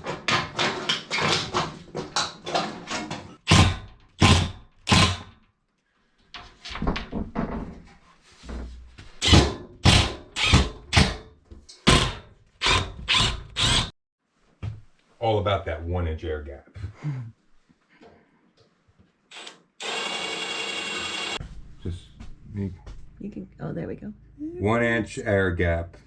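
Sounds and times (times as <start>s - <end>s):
rustling and scraping: 6.2s - 9.2s.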